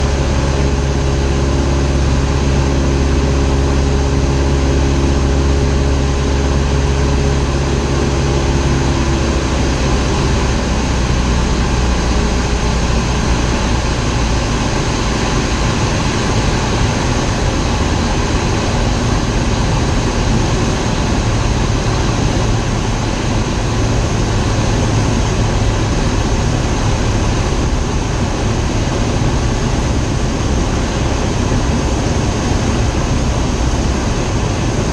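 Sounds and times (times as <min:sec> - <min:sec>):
propeller aircraft engine droning: 0:00.0 - 0:34.9
rushing wind and air: 0:00.0 - 0:34.9.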